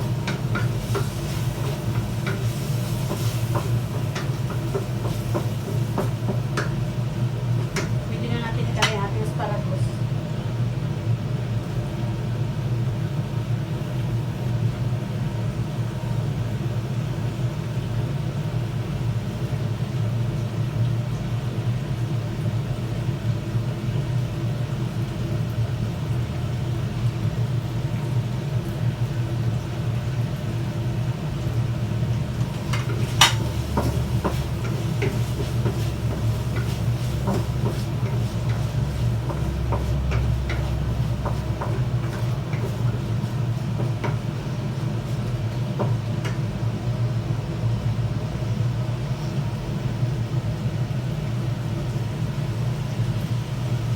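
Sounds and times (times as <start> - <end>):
meat sizzling in a pan: 0.0 - 9.6, 29.8 - 47.3
steady low hum: 0.0 - 21.1, 23.3 - 53.9
utensil clinking against pan: 32.4 - 43.0.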